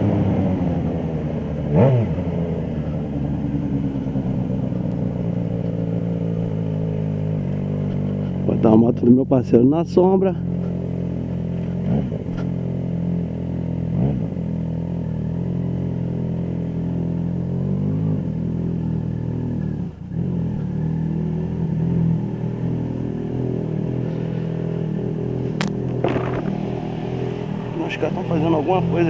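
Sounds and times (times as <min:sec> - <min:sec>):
motorcycle engine running: 0:00.0 - 0:29.0
sharp click: 0:25.6 - 0:26.6.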